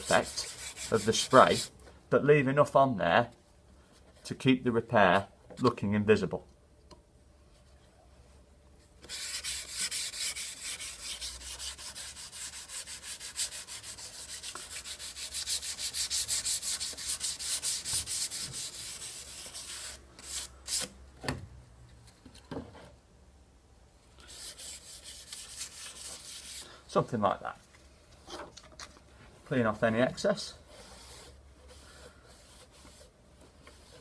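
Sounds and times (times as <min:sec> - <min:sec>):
hand wet-sanding strokes: 0:00.0 - 0:01.8, 0:09.0 - 0:20.9, 0:24.2 - 0:26.7, 0:30.6 - 0:34.0.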